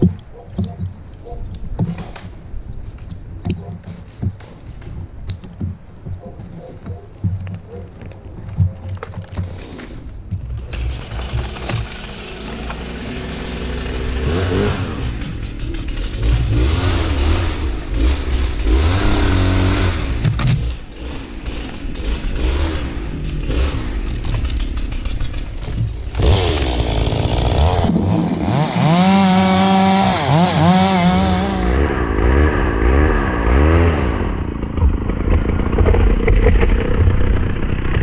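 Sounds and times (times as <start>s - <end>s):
chainsaw engine revving: 10.6s - 38.0s.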